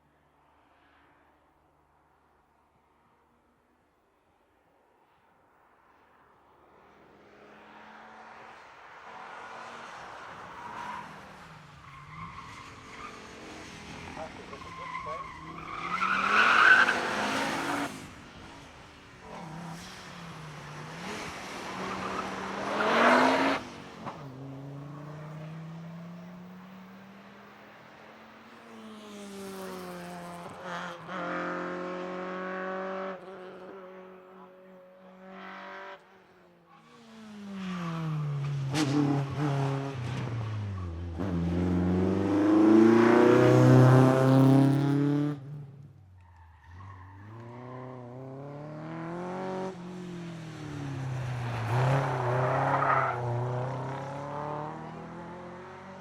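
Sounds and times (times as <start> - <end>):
car engines accelerating hard: 37.1 - 45.9, 47.3 - 56.0.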